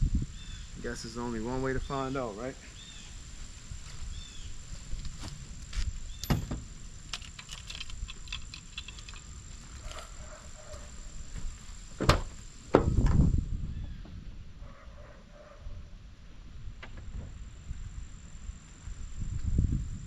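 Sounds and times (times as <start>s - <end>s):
knocks and thuds of handling: 6.2s - 6.7s, 12.0s - 13.2s.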